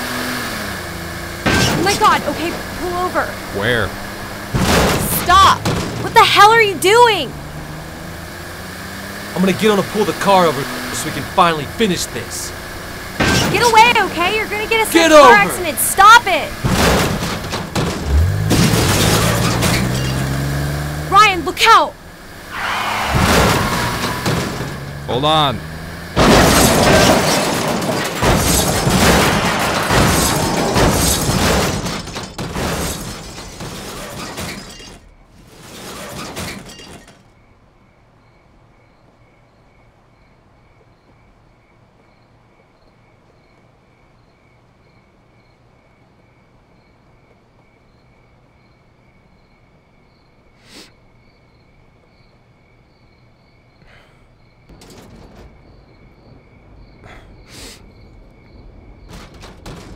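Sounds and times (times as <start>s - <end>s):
heavy metal impacts: 16.0s - 20.5s, 26.0s - 35.0s
glass shattering: 16.6s - 20.6s, 26.2s - 37.3s.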